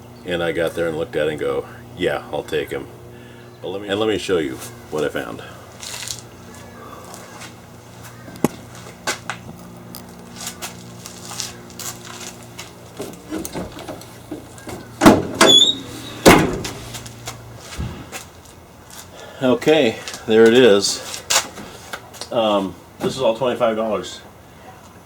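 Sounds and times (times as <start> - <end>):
low electrical hum: 0.0 - 25.0
faint scuffs: 5.8 - 9.4, 10.2 - 12.8, 15.9 - 19.1
soft rustle: 10.1 - 13.5
handling clicks and knocks: 11.9 - 17.1
door scraping: 13.0 - 18.2
door squealing: 13.3 - 16.9.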